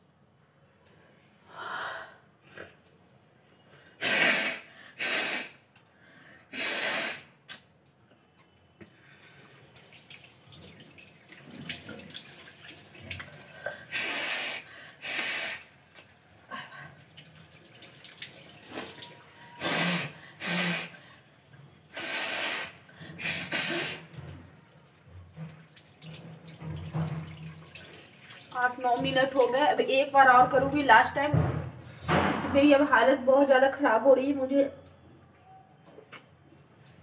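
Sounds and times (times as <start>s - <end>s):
woman blowing nose: 4.0s - 5.7s, 6.5s - 7.6s, 13.9s - 15.8s, 18.7s - 21.0s, 21.9s - 24.1s
tap running into basin: 24.1s - 30.9s.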